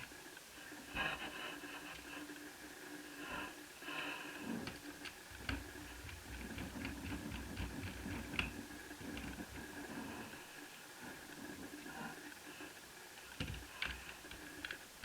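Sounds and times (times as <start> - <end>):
small clicks and scraping of parts: 4.6 - 9.6, 13.2 - 14.9.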